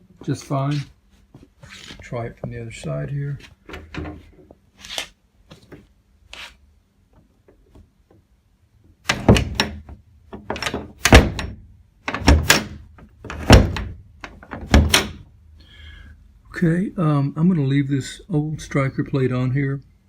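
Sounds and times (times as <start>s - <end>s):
door shutting with latch thunks: 9.0s - 15.2s.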